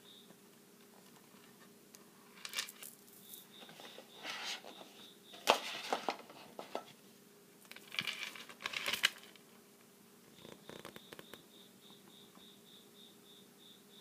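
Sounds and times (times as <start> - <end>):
plastic toys clicking and clattering: 2.4 - 3.3, 7.7 - 9.4.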